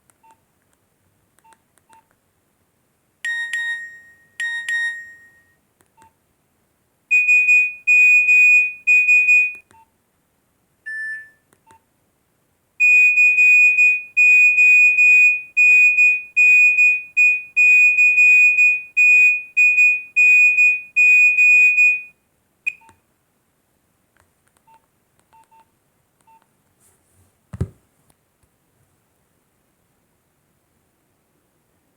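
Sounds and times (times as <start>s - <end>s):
mobile phone beeping: 3.2s - 6.1s, 7.1s - 9.8s, 10.9s - 11.4s.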